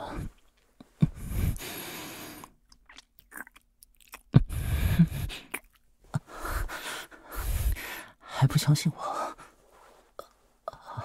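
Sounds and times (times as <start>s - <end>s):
man breathing close-miked: 0.0s - 2.6s, 4.4s - 8.4s, 9.0s - 11.0s
wet mouth clicks and smacks: 2.4s - 4.5s, 5.4s - 5.9s.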